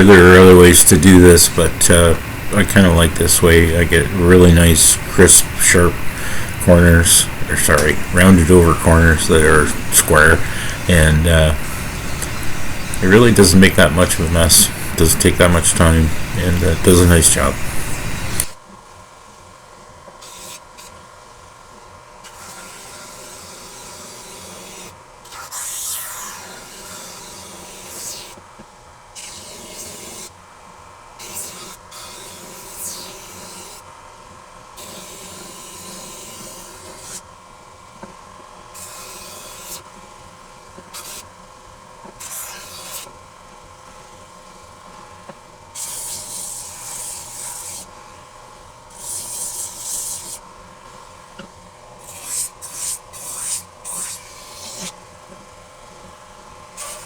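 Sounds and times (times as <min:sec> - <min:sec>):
hissing sanding of wood: 0:00.0 - 0:18.5, 0:45.8 - 0:47.9, 0:48.9 - 0:50.4, 0:52.0 - 0:55.0, 0:56.8 - 0:57.0
sander motor hum: 0:00.0 - 0:18.6.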